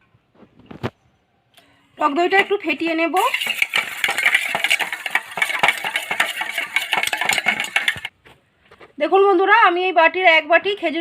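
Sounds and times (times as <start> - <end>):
utensil beating in a bowl: 2.3 - 8.1.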